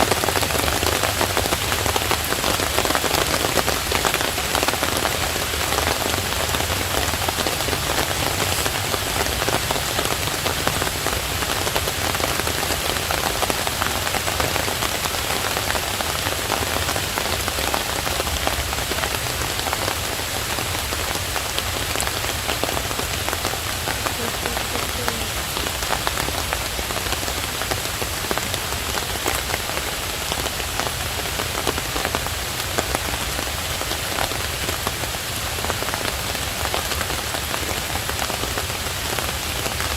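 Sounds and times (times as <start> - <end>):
steady rain hiss: 0.0 - 39.9
burning firewood crackling: 0.2 - 30.9.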